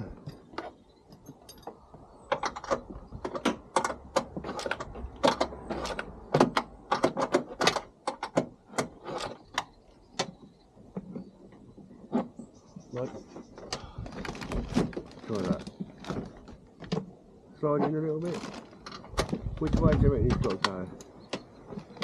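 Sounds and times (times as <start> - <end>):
metallic clicks and clanks: 1.1 - 10.4.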